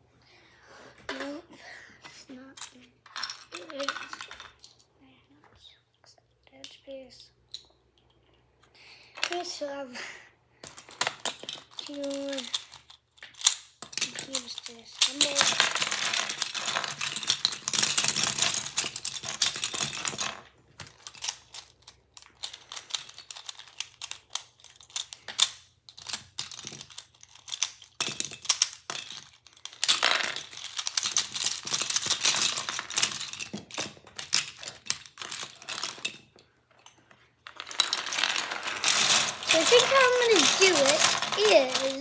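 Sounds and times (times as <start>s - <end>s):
plastic cube pieces clicking: 10.6s - 36.2s, 37.5s - 42.0s.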